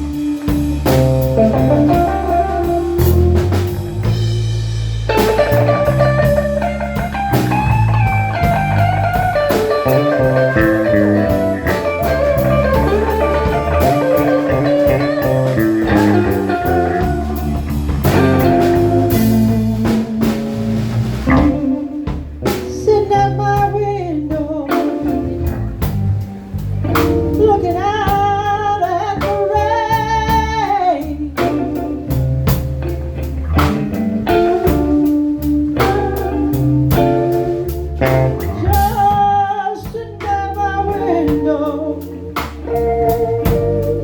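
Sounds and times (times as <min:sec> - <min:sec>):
blues music with guitar and drums: 0:00.0 - 0:44.0
person singing: 0:22.7 - 0:25.2, 0:27.4 - 0:31.9, 0:38.4 - 0:44.0.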